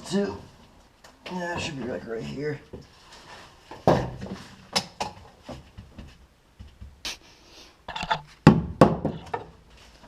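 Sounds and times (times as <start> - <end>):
short hiss: 7.0 - 7.8.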